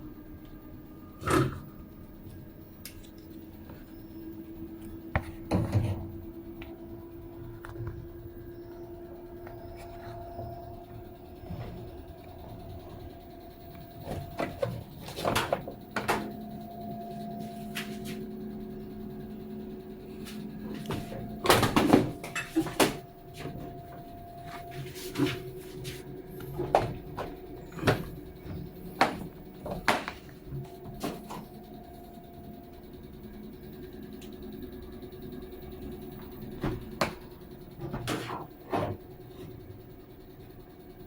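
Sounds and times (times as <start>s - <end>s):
low steady hum: 0.0s - 41.0s
hard objects knocking and clicking: 26.7s - 30.3s.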